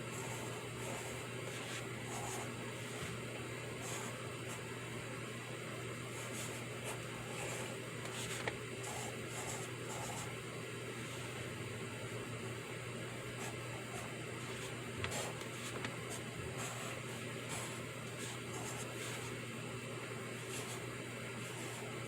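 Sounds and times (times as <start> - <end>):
background hum and hiss: 0.0 - 22.0
pencil writing on paper: 0.1 - 3.2, 3.8 - 4.6, 6.2 - 10.3, 13.4 - 19.4, 20.3 - 22.0.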